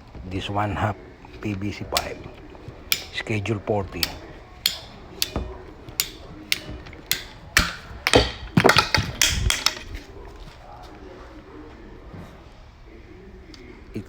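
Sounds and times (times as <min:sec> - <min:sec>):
pipe cutter ratchet clicks: 0:02.9 - 0:03.3, 0:04.0 - 0:09.9
blade cracking through pipe: 0:02.9 - 0:10.2.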